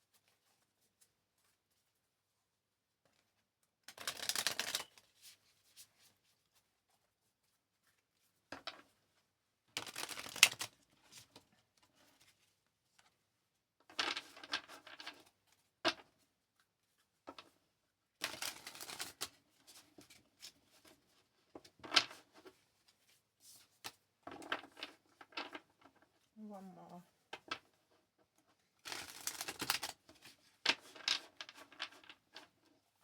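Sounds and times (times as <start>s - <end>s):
cards being shuffled: 3.9s - 5.0s, 9.8s - 10.8s, 18.2s - 19.4s, 28.9s - 32.1s.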